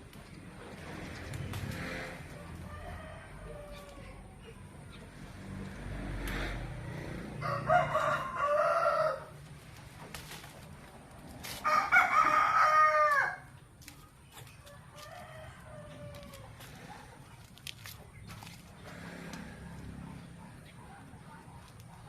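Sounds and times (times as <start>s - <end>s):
rooster crowing: 2.3s - 4.2s, 7.3s - 9.4s, 11.6s - 13.5s, 14.9s - 16.7s.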